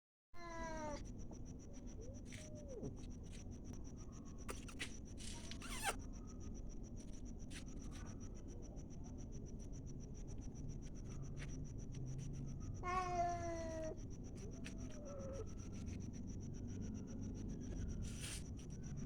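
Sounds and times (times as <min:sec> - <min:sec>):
faint high whine: 0:00.4 - 0:19.0
rustling and scratching: 0:02.2 - 0:06.0, 0:17.4 - 0:19.0
short falling squeak: 0:05.4 - 0:06.0.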